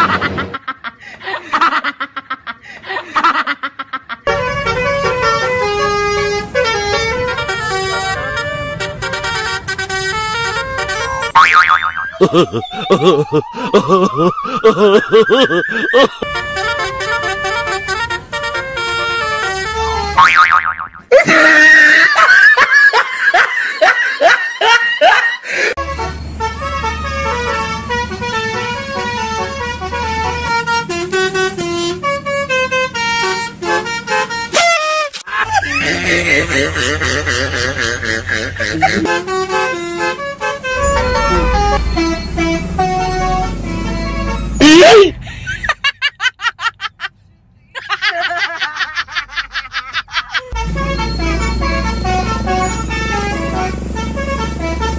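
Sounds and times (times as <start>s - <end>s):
musical bus horn playing tune: 4.2s - 12.2s, 16.0s - 20.8s, 25.7s - 35.3s, 38.8s - 45.2s, 50.5s - 54.9s
electronic stepped-note melody: 40.6s - 44.6s
rising wavering electronic tone: 40.8s - 42.6s.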